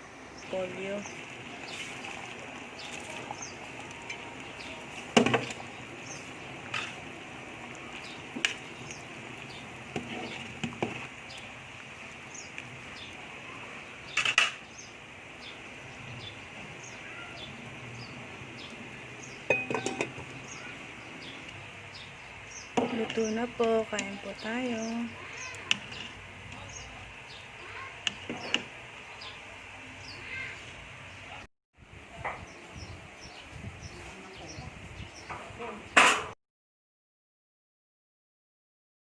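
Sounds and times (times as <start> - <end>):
metal utensil knocking on pot: 19.5 - 20.2.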